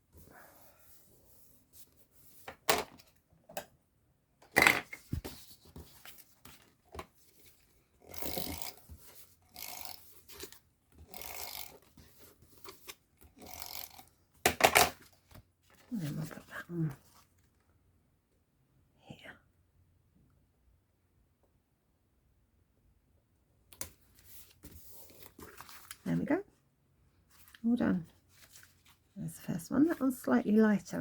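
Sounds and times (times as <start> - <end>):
paper rubbing and rustling: 5.0 - 10.6, 24.1 - 26.1, 27.3 - 29.2.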